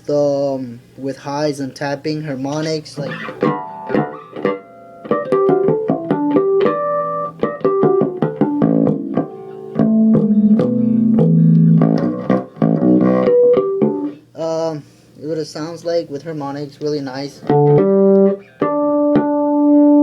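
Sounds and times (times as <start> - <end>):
electric bass tapping notes: 2.5 - 14.3, 17.4 - 20.0.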